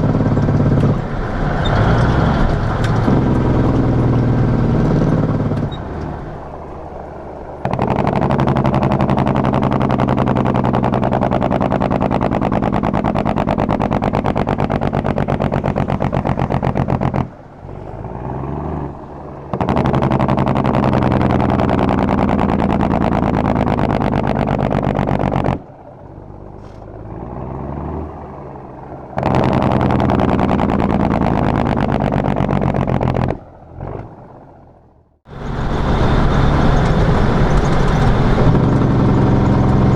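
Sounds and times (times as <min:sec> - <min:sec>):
engine brake pulsing bursts: 0:00.0 - 0:25.6, 0:35.3 - 0:39.9
diesel engine running: 0:00.0 - 0:39.9.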